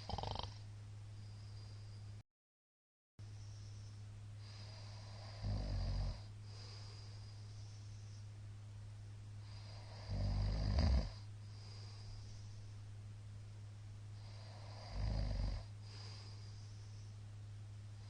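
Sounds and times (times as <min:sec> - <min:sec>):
man snoring: 0:00.0 - 0:00.6, 0:04.6 - 0:06.3, 0:09.5 - 0:11.3, 0:14.2 - 0:15.7
soft breathing: 0:00.0 - 0:02.2, 0:03.2 - 0:05.4, 0:06.2 - 0:08.5, 0:09.4 - 0:10.2, 0:11.0 - 0:13.0, 0:14.1 - 0:15.0, 0:15.6 - 0:17.3.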